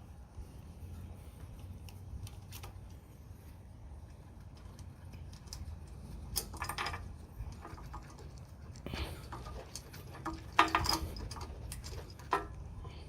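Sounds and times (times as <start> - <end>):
low steady rumble: 0.0 - 13.0
light clicks and rattles: 4.0 - 13.0.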